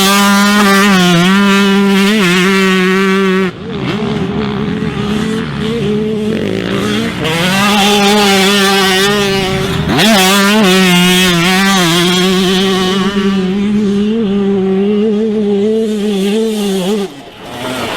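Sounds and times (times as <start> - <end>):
motocross bike engines revving: 0.0 - 17.9.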